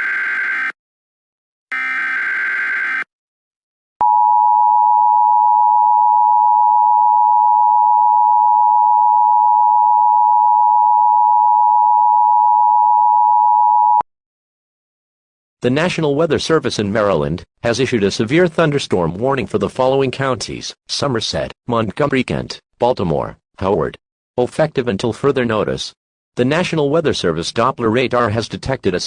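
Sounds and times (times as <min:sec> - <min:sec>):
screeching data warble: 0:00.0 - 0:00.8, 0:01.7 - 0:03.1.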